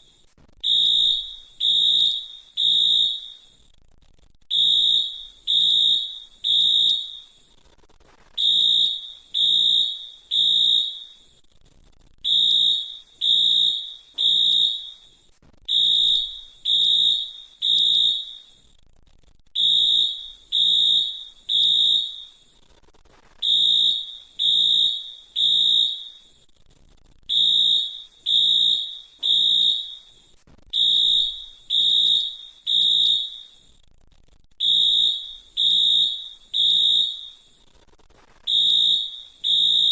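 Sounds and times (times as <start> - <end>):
fire alarm beeping: 0.6 - 3.5, 4.5 - 7.4, 8.4 - 11.3, 12.2 - 18.6, 19.6 - 22.5, 23.4 - 26.4, 27.3 - 33.7, 34.6 - 37.6, 38.5 - 39.9.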